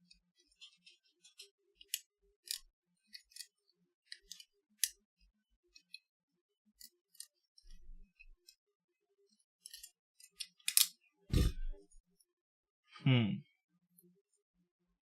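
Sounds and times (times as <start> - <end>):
small tool clicks and scrapes: 0.0 - 5.0, 6.7 - 8.6, 9.3 - 11.7.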